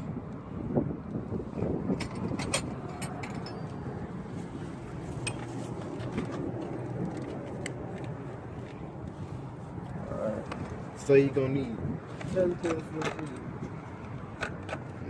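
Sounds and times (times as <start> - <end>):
metallic clinks of hand tools: 2.4 - 3.8.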